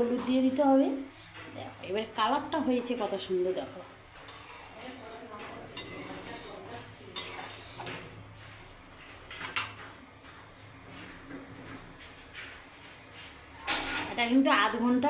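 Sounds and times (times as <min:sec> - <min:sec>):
spoon scraping metal pan: 0:04.2 - 0:08.0.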